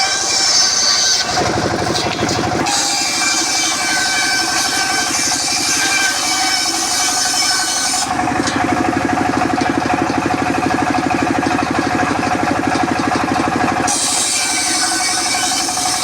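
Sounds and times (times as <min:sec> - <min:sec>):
circular sawmill hissing: 0:00.0 - 0:09.9, 0:13.3 - 0:16.0
engine low pulsing: 0:08.1 - 0:13.9.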